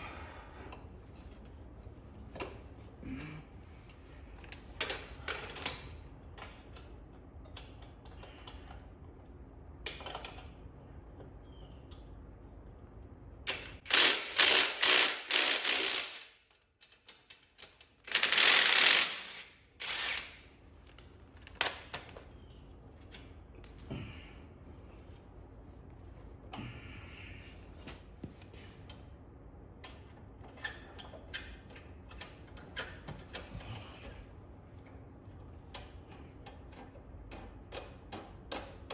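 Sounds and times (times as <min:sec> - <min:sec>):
tools clicking and knocking: 0:04.5 - 0:08.9, 0:09.7 - 0:11.3, 0:15.6 - 0:18.6, 0:29.8 - 0:33.8, 0:35.6 - 0:38.9.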